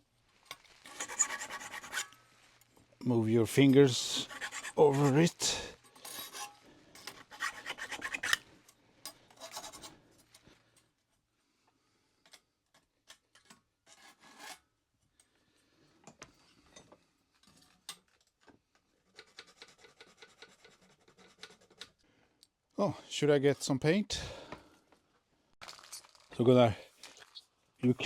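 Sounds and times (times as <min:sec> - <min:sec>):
hand file scraping metal: 0:00.9 - 0:02.2, 0:04.0 - 0:08.4, 0:09.3 - 0:10.0, 0:13.9 - 0:14.6, 0:19.1 - 0:22.0.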